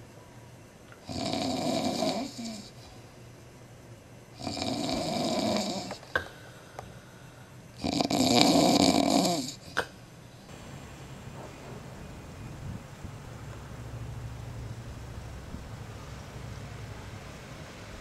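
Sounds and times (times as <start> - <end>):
man snoring loudly: 1.1 - 2.7, 4.4 - 6.0, 7.8 - 9.6.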